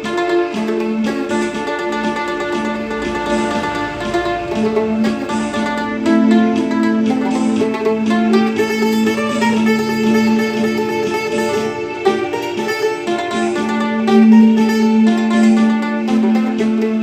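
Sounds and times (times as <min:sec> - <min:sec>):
mandolin melody: 0:00.0 - 0:17.0.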